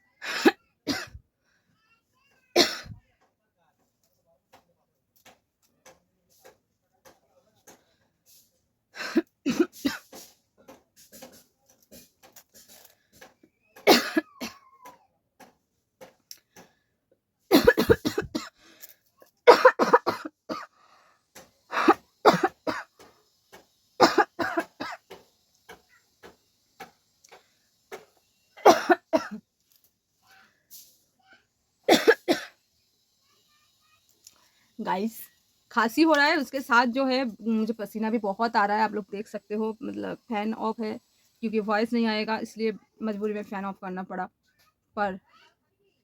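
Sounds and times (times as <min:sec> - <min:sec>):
woman coughing: 0:00.2 - 0:01.2, 0:02.6 - 0:03.0, 0:09.0 - 0:10.1, 0:13.8 - 0:14.6, 0:17.5 - 0:18.6, 0:19.5 - 0:20.7, 0:21.7 - 0:22.9, 0:24.0 - 0:25.0, 0:28.6 - 0:29.4, 0:31.9 - 0:32.6.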